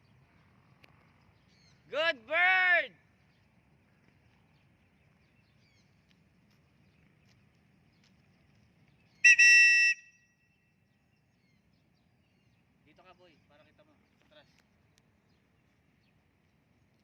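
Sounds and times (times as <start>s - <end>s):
vehicle horn blast: 9.3s - 10.2s.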